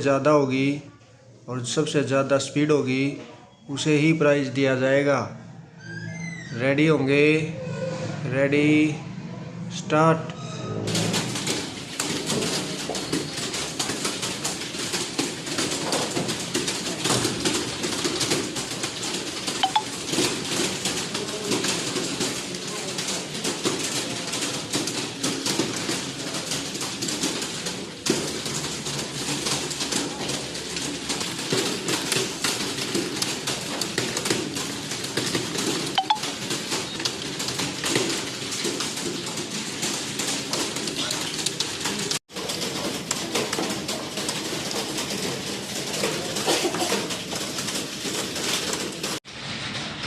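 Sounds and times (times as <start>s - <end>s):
keyboards clattering: 10.8s - 50.0s.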